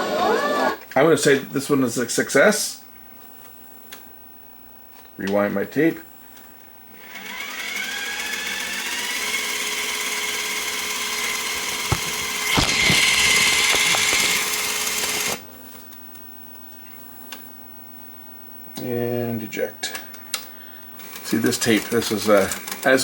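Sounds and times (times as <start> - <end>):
tape reel motor whining: 7.0 - 15.5, 21.0 - 23.0
clicks: 11.4 - 15.4.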